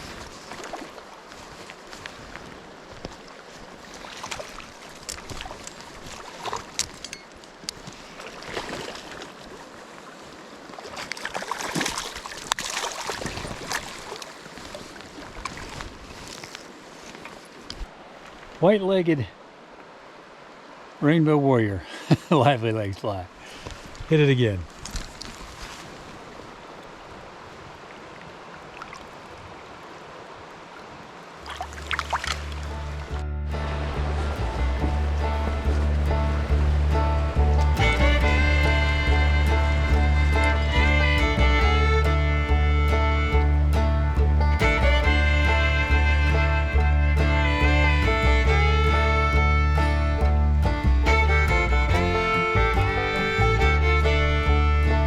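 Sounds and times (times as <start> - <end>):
water splashing in a stream: 0.0 - 21.6, 23.0 - 55.0
running water rushing: 0.0 - 55.0
music with deep bass notes: 32.6 - 55.0.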